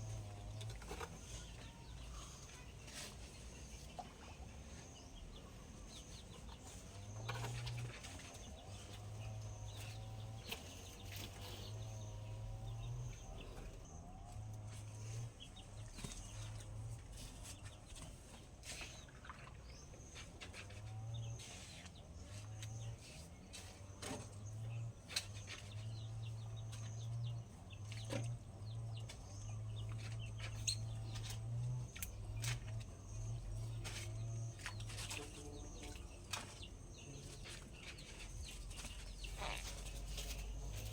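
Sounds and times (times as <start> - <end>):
poultry clucking: 25.9 - 40.9.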